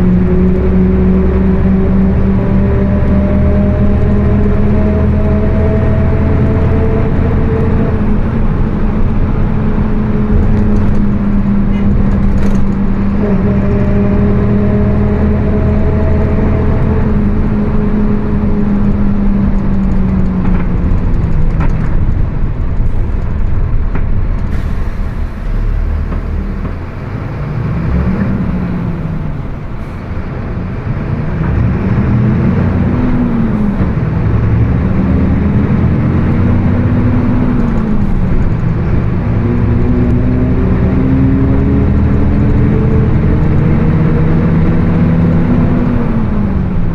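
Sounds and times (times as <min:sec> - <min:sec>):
bus diesel engine running: 0:00.0 - 0:46.9
differential howl: 0:09.4 - 0:21.2.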